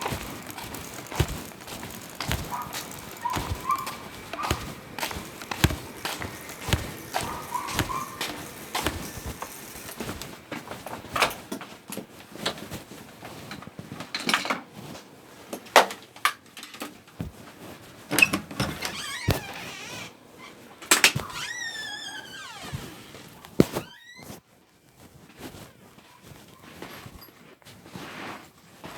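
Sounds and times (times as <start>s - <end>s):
knocks and clatter of handling: 0.0s - 12.0s.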